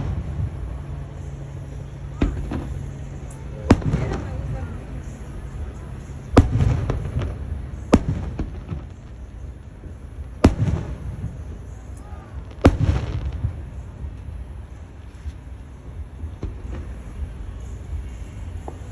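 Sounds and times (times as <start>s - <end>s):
fireworks loud bangs: 0.0s - 5.6s, 6.2s - 14.1s
fireworks pops and crackles: 0.0s - 18.9s.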